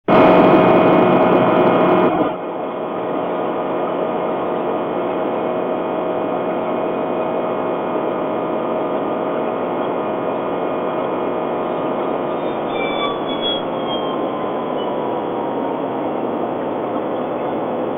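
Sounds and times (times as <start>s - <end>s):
whistle from car engine: 9.8s - 17.9s
car driving: 9.9s - 17.9s.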